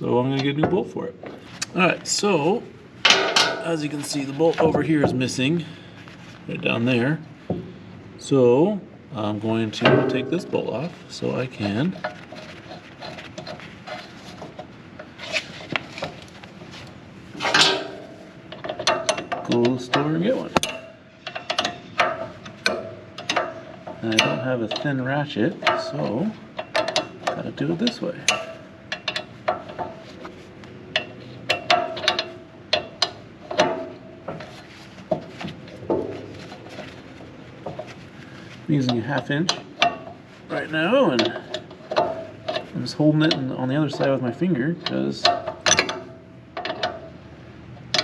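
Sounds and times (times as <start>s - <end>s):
hand tools clicking and scraping: 11.2s - 47.2s
wrench clacking: 17.4s - 25.0s, 25.6s - 37.0s, 44.8s - 47.2s
wrench clinking on metal: 44.8s - 47.2s.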